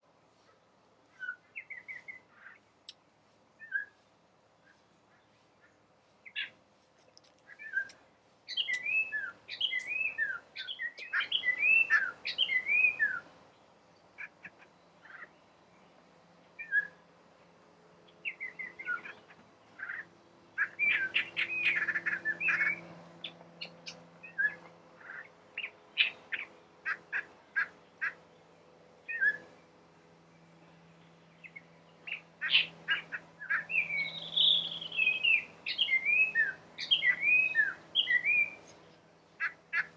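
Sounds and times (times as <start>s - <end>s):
thrush singing whistled phrases: 8.5s - 13.2s, 32.1s - 38.6s.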